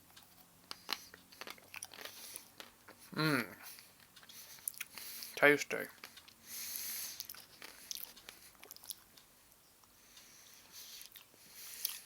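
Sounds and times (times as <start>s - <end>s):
person chewing ice lolly: 0.2s - 5.4s, 7.0s - 9.2s, 10.8s - 12.0s.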